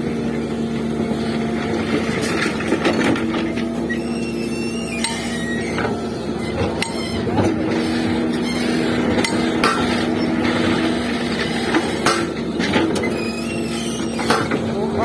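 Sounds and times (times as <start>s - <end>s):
excavator engine hum: 0.0s - 15.0s
metallic clanks and knocks: 5.0s - 7.6s, 9.2s - 10.6s, 14.1s - 14.7s.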